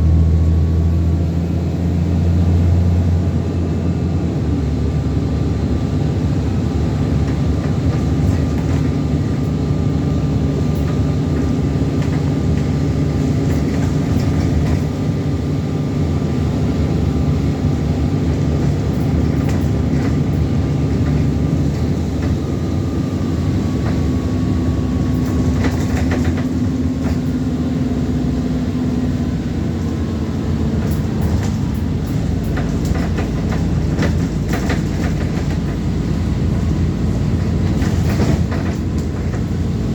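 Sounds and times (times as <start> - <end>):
bus engine running: 0.0 - 39.9
rattles and knocks: 7.3 - 9.6, 10.5 - 15.0, 18.3 - 22.5, 25.2 - 27.4, 30.8 - 36.0, 37.4 - 39.6.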